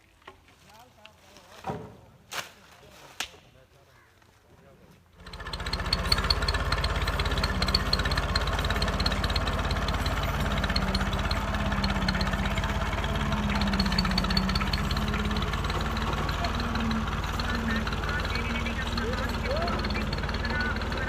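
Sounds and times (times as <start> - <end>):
engine running steadily: 5.2 - 21.0.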